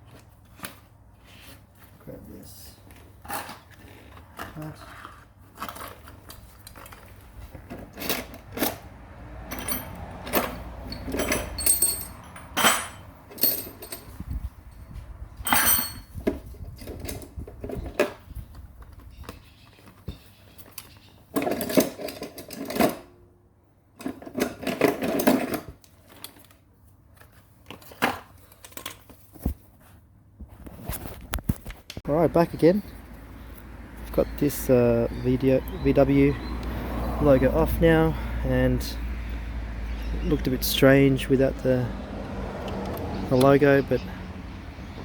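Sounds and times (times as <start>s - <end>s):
scraping and rustling: 2.8s - 8.9s
hard plastic parts clattering: 20.7s - 23.1s, 24.0s - 26.6s.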